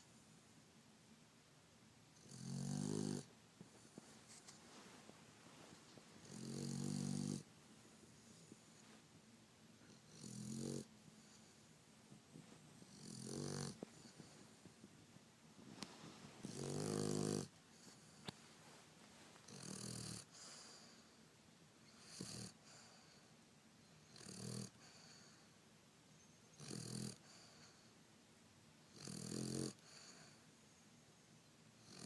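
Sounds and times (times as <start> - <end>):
dog snoring: 2.2 - 3.3, 6.2 - 7.5, 9.8 - 11.6, 12.8 - 14.5, 16.4 - 18.3, 19.4 - 21.0, 21.9 - 23.3, 24.0 - 25.4, 26.5 - 27.9, 28.9 - 30.4, 31.8 - 32.0.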